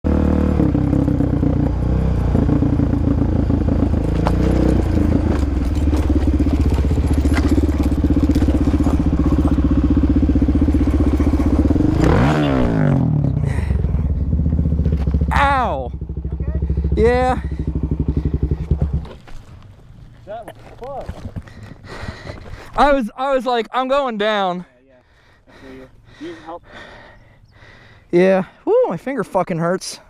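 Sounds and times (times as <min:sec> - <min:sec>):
motorcycle engine running: 0:00.0 - 0:20.0.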